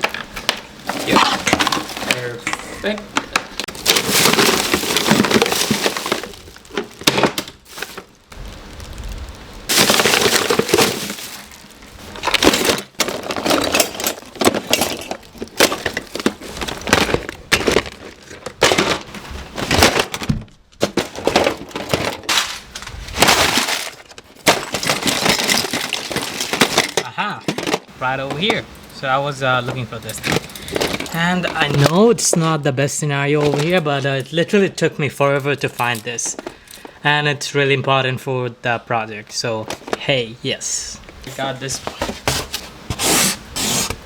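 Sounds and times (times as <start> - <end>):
hard objects cracking and clattering: 0.0 - 32.4, 33.3 - 34.6.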